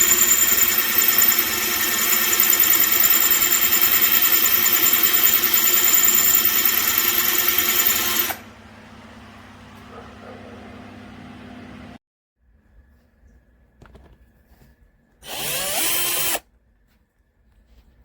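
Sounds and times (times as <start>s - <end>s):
cordless drill motor running: 0.0s - 8.4s, 15.2s - 16.4s.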